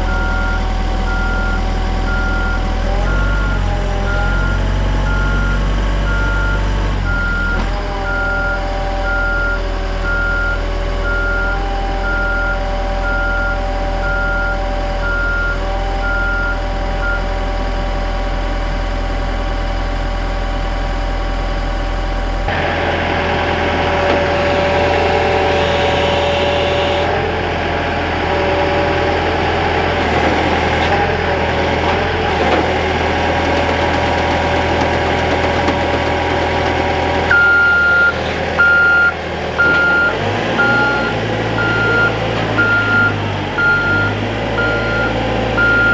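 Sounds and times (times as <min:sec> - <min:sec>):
reversing alarm beeping: 0:00.0 - 0:17.3, 0:22.5 - 0:27.2, 0:36.6 - 0:45.9
machine engine running: 0:22.1 - 0:45.9.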